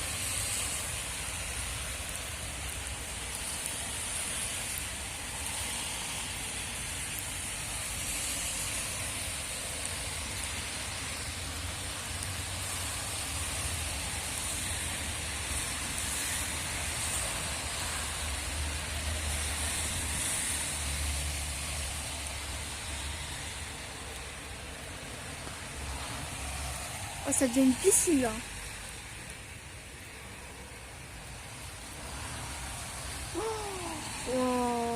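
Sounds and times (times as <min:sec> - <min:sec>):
heavy rain pouring: 0:00.0 - 0:34.9
wind gusting and rumbling: 0:21.6 - 0:34.9.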